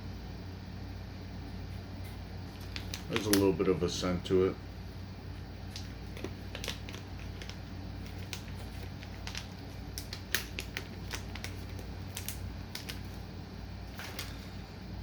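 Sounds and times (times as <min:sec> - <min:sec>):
low electrical hum: 0:00.0 - 0:15.0
plastic package crinkling: 0:02.4 - 0:03.6, 0:05.7 - 0:13.3, 0:13.9 - 0:14.7.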